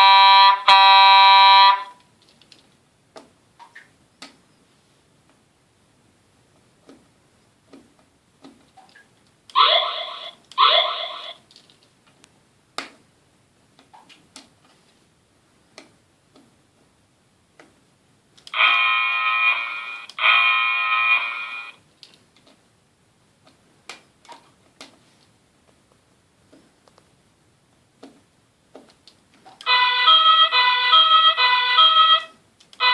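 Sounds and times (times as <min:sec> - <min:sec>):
horn blasts: 0:00.0 - 0:02.0, 0:18.6 - 0:21.8, 0:29.7 - 0:32.9.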